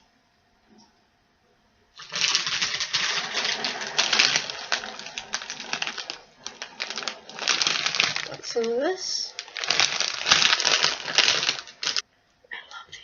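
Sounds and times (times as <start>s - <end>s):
wrapped candies clattering and crinkling: 2.0s - 12.0s.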